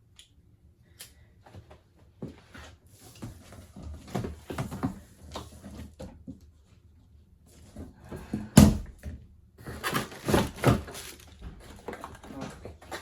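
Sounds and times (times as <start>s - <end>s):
packaging rustling and scraping: 9.6s - 13.0s.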